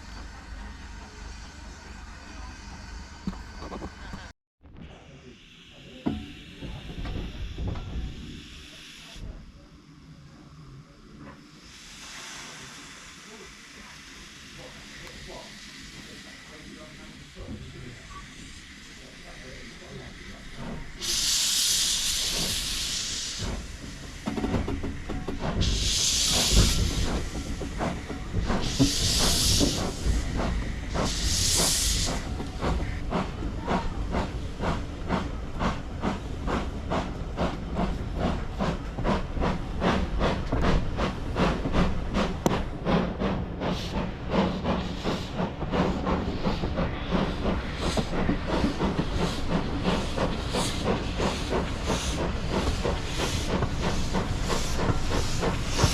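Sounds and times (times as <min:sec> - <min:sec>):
steam locomotive exhaust beats: 0:05.1 - 0:09.4, 0:11.2 - 0:55.9
hissing blasts of steam: 0:11.6 - 0:55.9.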